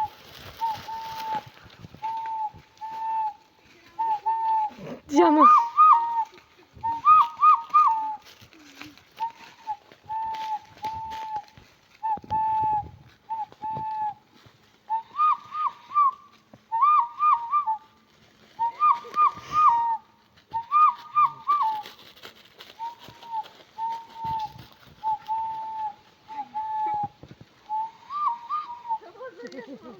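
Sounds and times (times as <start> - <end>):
woman hand whistling bird calls: 4.0 - 6.3, 6.9 - 8.2, 16.8 - 17.8, 25.1 - 27.1, 27.7 - 29.1.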